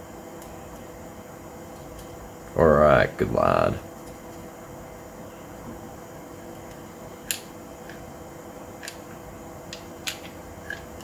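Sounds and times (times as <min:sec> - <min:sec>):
faint hum: 0:00.0 - 0:11.0
small parts clicking and tapping: 0:08.8 - 0:11.0.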